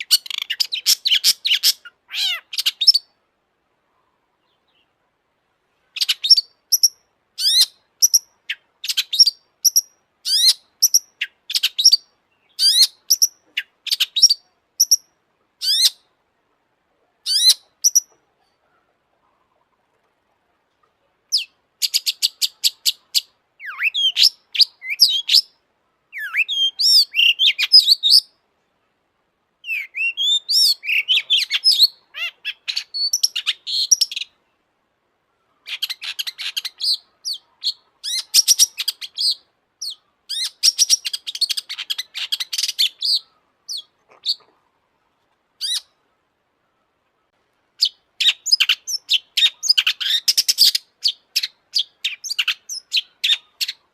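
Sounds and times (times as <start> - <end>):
bird singing clicks and trills: 0.0 - 3.1, 6.0 - 16.1, 17.3 - 18.7, 29.6 - 34.4, 35.6 - 44.6, 47.2 - 53.9.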